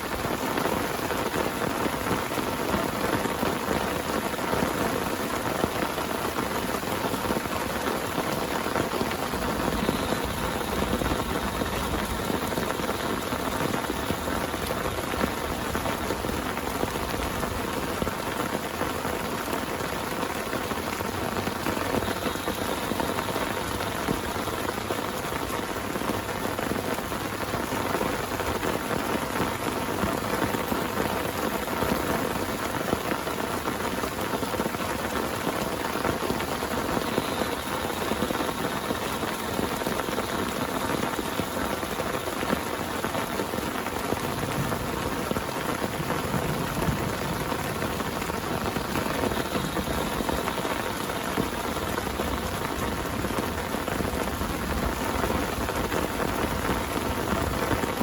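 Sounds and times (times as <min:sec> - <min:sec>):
heavy rain on a tent: 0:00.0 - 0:58.0.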